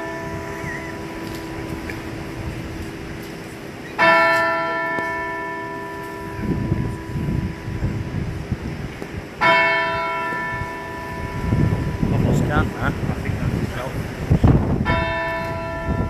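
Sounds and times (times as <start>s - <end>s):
bell tolling: 9.4s - 12.2s.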